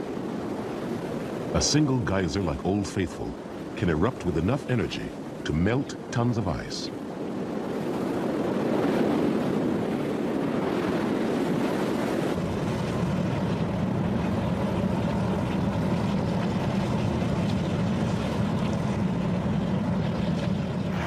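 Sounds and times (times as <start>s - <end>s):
geyser rushing water and steam: 1.4s - 6.9s, 12.0s - 21.0s.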